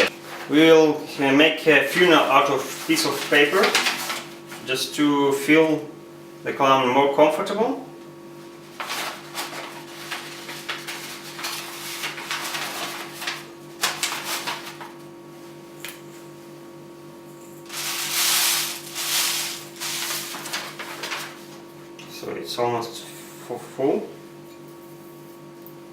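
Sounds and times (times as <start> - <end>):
rustling of plant material and paper: 1.8 - 4.8, 8.6 - 15.0, 17.6 - 21.7.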